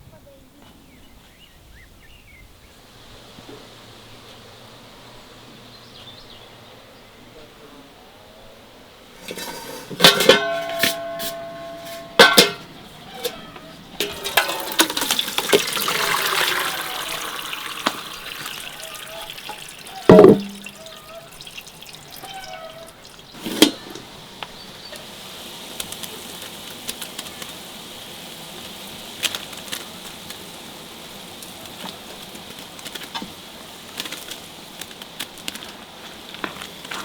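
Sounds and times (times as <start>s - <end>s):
kitchenware clinking: 9.2s - 24.0s
running water: 14.0s - 37.0s.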